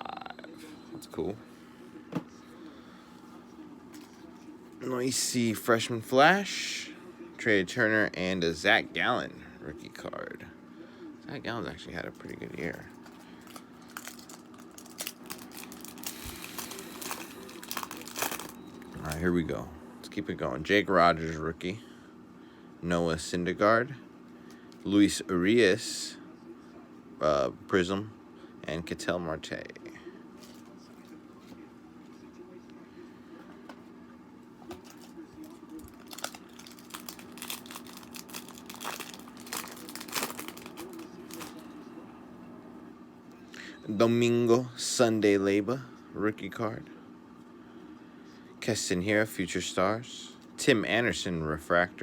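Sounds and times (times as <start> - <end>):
foil wrapper crinkling: 12.2 - 19.2, 34.8 - 41.7.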